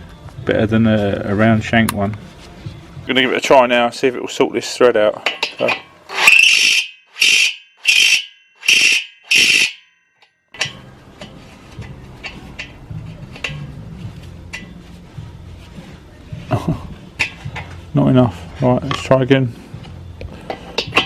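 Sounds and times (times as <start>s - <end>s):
electric drill squealing on steel: 6.1s - 9.8s.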